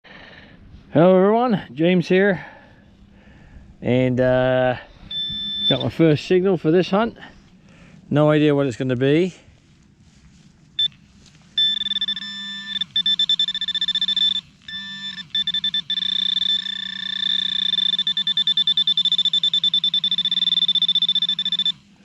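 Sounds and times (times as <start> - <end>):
metal detector warbling beep: 5.1 - 6.0, 11.6 - 21.8.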